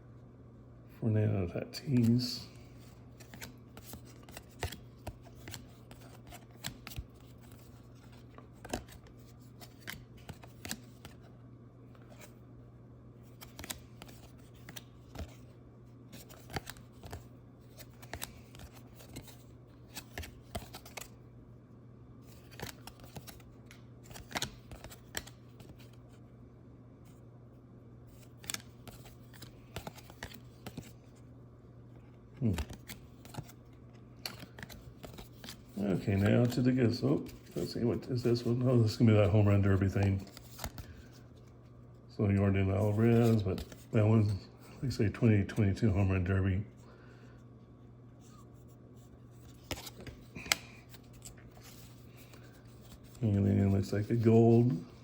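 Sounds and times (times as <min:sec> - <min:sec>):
steady low hum: 0:00.0 - 0:55.0
cards being flipped through: 0:01.8 - 0:12.4, 0:13.2 - 0:15.5, 0:16.1 - 0:21.2, 0:22.2 - 0:26.2, 0:28.1 - 0:31.3, 0:31.9 - 0:41.6, 0:42.8 - 0:44.4, 0:48.2 - 0:55.0.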